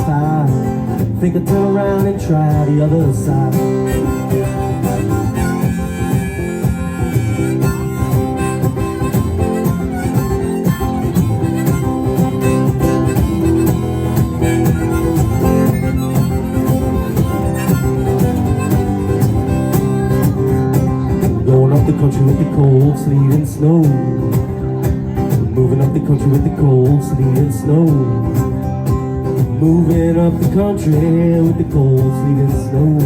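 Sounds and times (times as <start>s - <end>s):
strummed acoustic guitar: 0.0s - 33.0s
harmonica playing: 3.3s - 21.4s.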